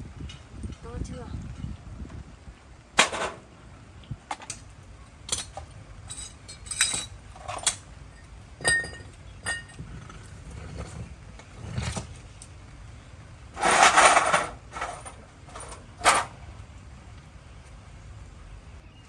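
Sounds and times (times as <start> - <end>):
metal tools clinking: 4.3 - 12.6, 13.6 - 16.4.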